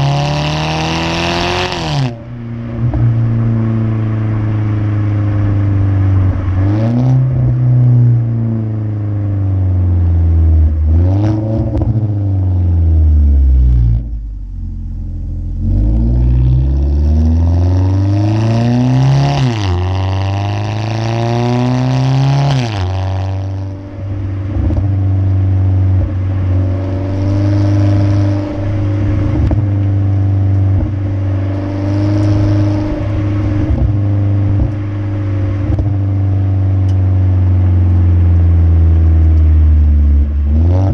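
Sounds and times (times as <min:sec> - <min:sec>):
car engine revving: 0:00.0 - 0:40.9
exhaust crackles and pops: 0:21.4 - 0:40.9.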